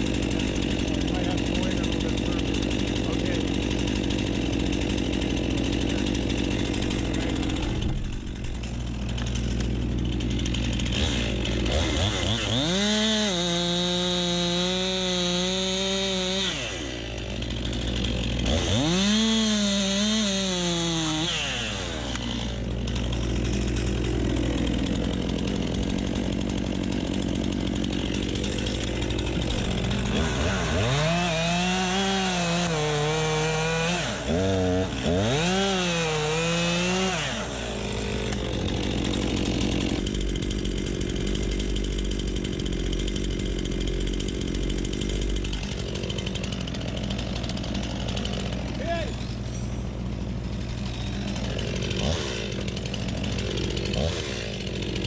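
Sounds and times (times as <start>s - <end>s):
chainsaw idling and revving: 0.0s - 55.0s.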